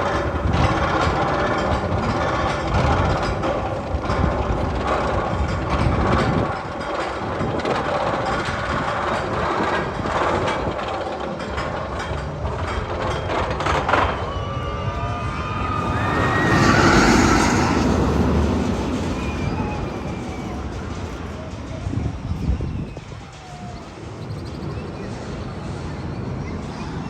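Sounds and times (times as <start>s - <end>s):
squealing gliding tones: 0.0s - 5.0s, 13.8s - 23.9s
roller coaster clicking and rattling: 0.0s - 27.0s
roller coaster rushing: 0.0s - 27.0s.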